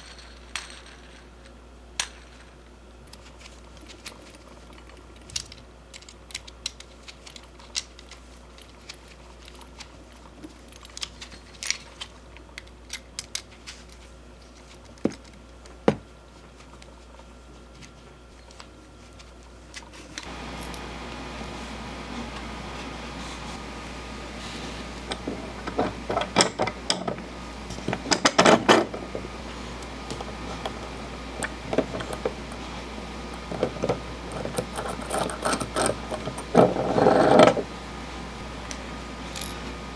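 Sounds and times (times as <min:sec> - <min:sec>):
faint low hum: 0:00.0 - 0:39.9
small hard parts clicking: 0:29.8 - 0:32.6, 0:33.2 - 0:37.7.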